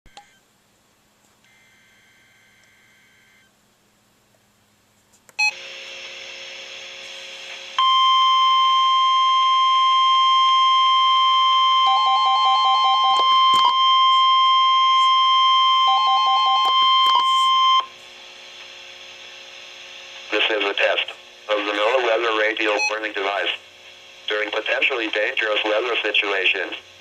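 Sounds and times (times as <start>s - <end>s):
steady alarm tone: 7.8s - 17.9s.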